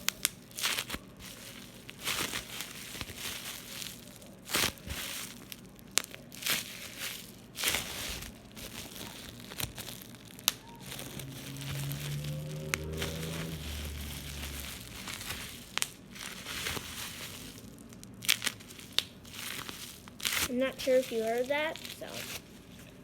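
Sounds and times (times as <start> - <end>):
bubble wrap pops: 0.0 - 11.3
bubble wrap crinkling: 0.0 - 23.0.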